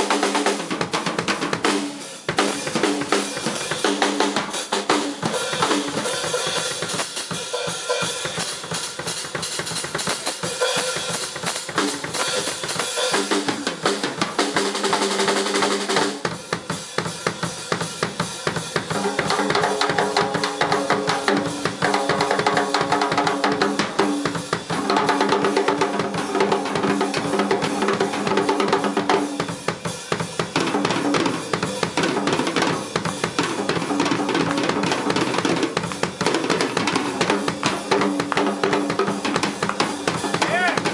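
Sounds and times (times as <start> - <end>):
drum kit solo: 0.0 - 40.9.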